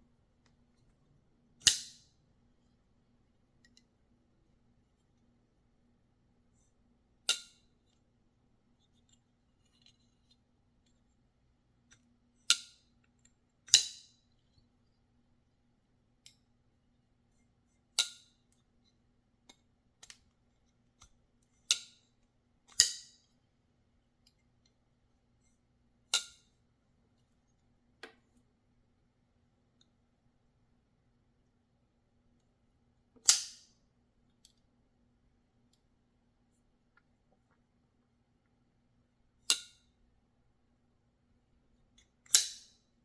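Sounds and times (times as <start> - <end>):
folding knife blade snapping: 33.2 - 33.7, 42.3 - 42.8.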